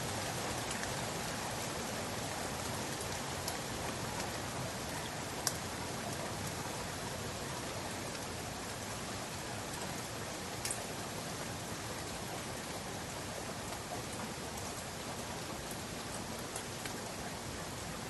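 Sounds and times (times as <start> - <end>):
steady rain hiss: 0.0 - 18.0
raindrops ticking: 0.5 - 1.0, 2.1 - 6.2, 10.5 - 10.9.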